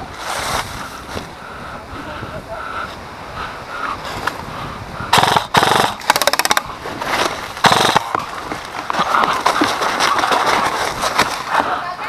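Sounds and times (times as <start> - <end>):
airsoft guns firing bursts: 5.2 - 6.7, 7.6 - 8.2.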